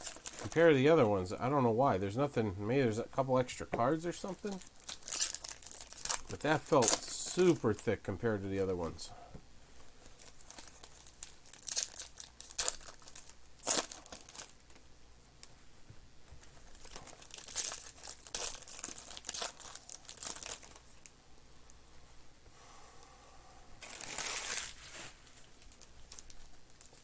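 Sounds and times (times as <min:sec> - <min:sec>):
card pack wrappers crinkling: 0:00.0 - 0:00.9, 0:03.9 - 0:08.0, 0:10.1 - 0:14.8, 0:16.5 - 0:21.1, 0:23.8 - 0:27.0.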